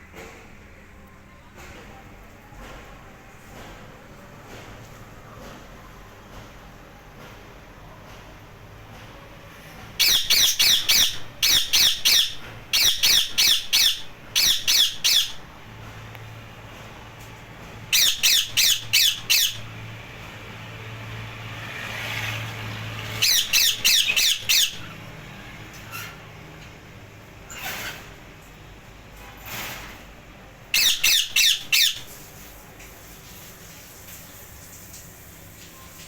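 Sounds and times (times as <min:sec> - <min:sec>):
parrots screeching: 0:10.0 - 0:15.4, 0:17.9 - 0:19.7, 0:23.1 - 0:25.0, 0:30.8 - 0:32.1.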